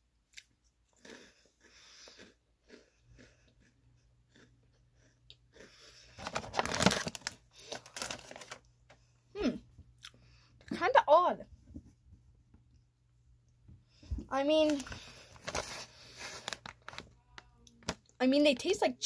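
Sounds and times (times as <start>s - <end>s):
person chewing crunchy crackers: 0.3s - 9.1s, 10.0s - 10.3s, 14.6s - 18.2s.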